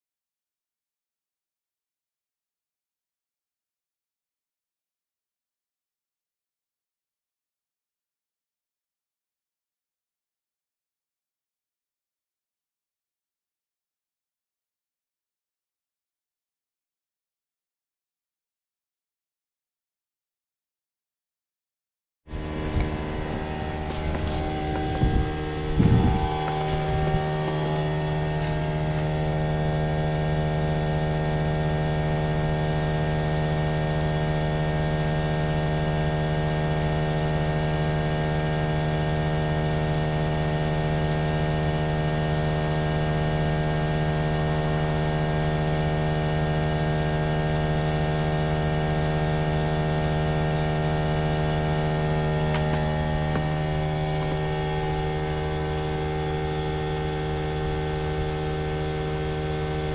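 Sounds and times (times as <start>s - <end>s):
heat pump humming: 22.3s - 59.9s.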